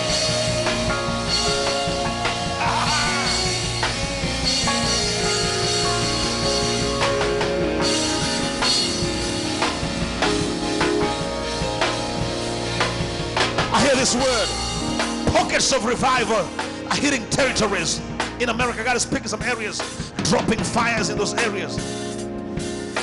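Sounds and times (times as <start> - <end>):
worship band music: 0.0 - 23.0
person singing: 1.4 - 4.0.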